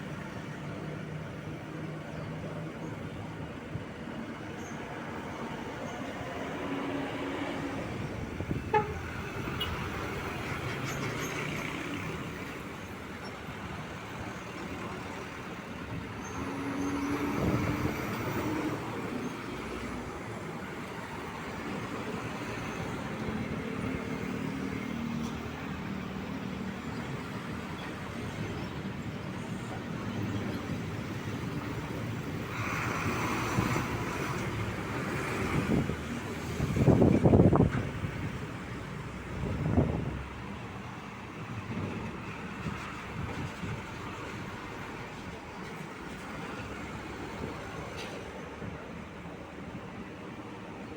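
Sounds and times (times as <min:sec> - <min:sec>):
heavy trucks engine and tyre noise: 0:00.0 - 0:50.9
truck horn toots: 0:08.5 - 0:09.8.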